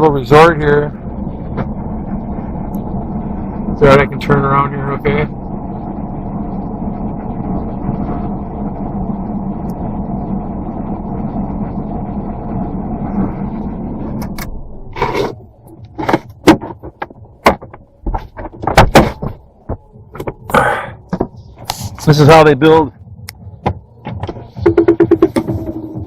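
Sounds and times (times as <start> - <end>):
road rumble: 0.0 - 26.0
vehicle engine running: 0.0 - 26.0
sharp clicks and knocks: 15.7 - 21.7.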